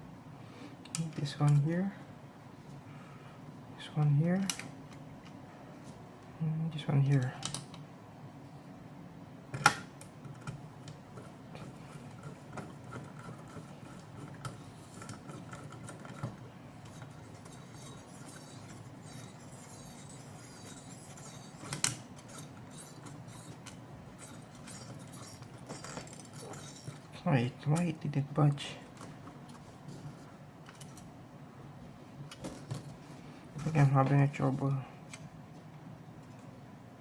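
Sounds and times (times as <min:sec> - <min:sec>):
small metal clicks and rattling: 0:09.6 - 0:27.2.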